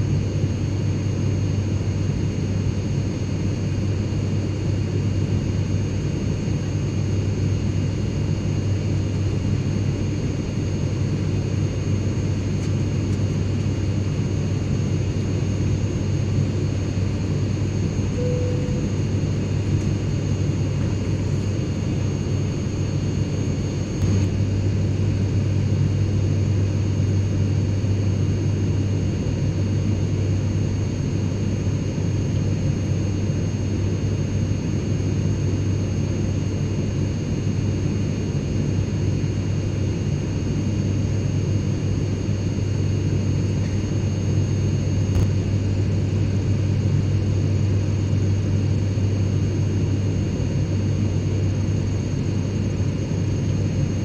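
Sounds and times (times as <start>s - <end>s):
airliner engine drone: 0.0s - 54.0s
faint high whining tones: 18.1s - 19.8s.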